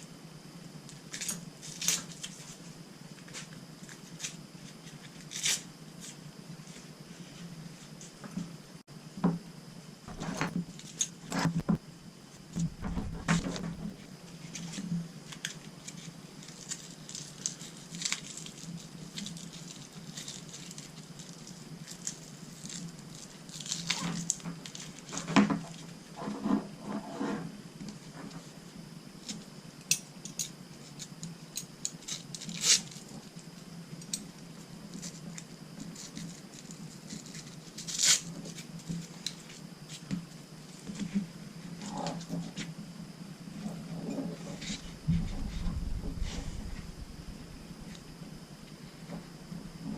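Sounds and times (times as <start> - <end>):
steady low hum: 0.0 - 19.6, 38.4 - 49.9
louder knocks: 12.6 - 14.0, 45.0 - 47.8.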